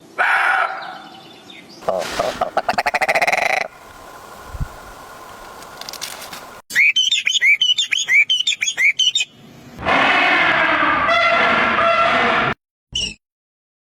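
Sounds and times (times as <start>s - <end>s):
bird chirping: 1.3s - 9.3s
quiet hiss: 1.8s - 6.6s.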